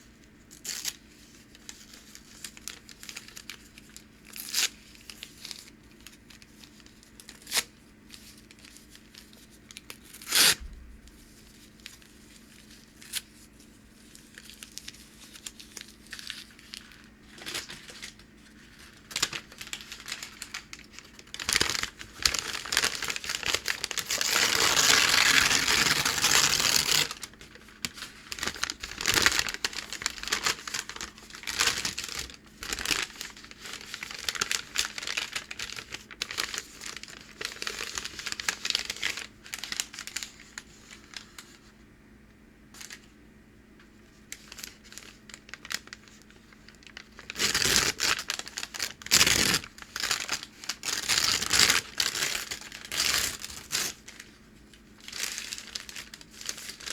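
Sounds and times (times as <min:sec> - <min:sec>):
packing paper crackling: 0:00.5 - 0:41.6, 0:44.2 - 0:56.9
paper tearing: 0:19.1 - 0:40.2, 0:47.2 - 0:54.0.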